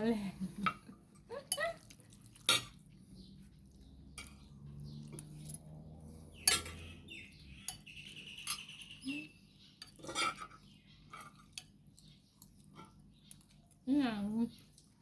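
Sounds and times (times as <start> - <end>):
cutlery clinking on plates: 2.4 - 2.8, 6.4 - 6.9, 9.8 - 11.8.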